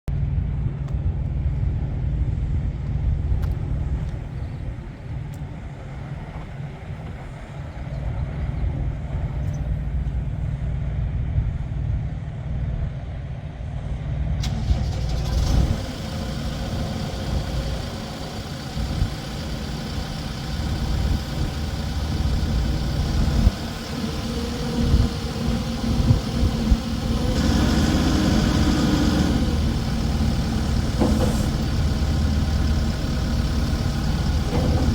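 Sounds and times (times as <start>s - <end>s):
backhoe diesel engine running: 14.4s - 34.9s.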